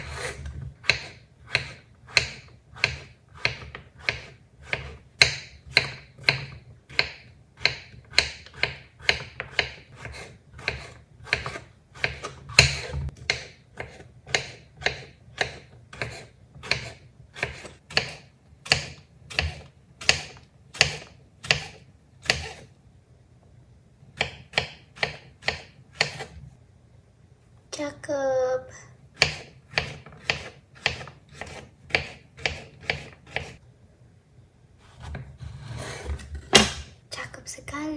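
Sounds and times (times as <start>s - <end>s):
knife slicing mushrooms: 0.0s - 22.7s, 24.2s - 26.4s, 29.2s - 33.6s.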